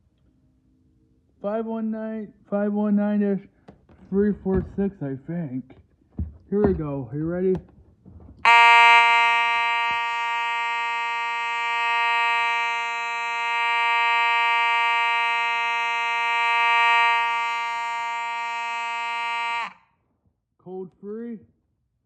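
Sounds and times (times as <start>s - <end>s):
fire alarm horn: 8.4s - 19.9s.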